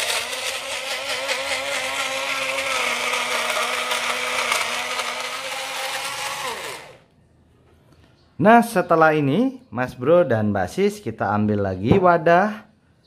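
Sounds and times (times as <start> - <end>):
blender motor whine: 0.0 - 7.0.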